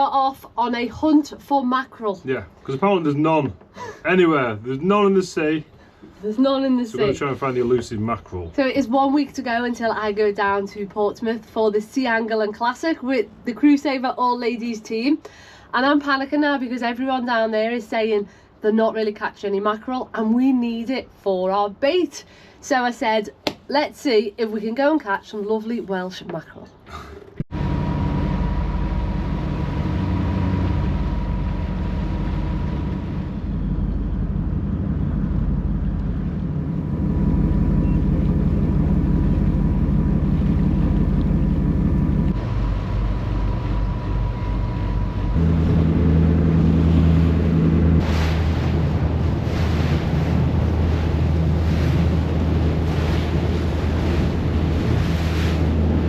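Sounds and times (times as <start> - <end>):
motorboat engine running: 27.5 - 56.0
waves washing against boat: 27.5 - 56.0
wind buffeting microphone: 27.6 - 56.0.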